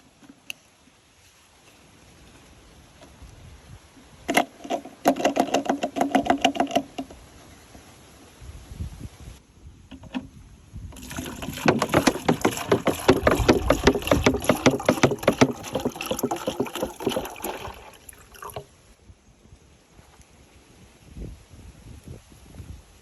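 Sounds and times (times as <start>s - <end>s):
water splashing and sloshing: 11.0s - 18.8s.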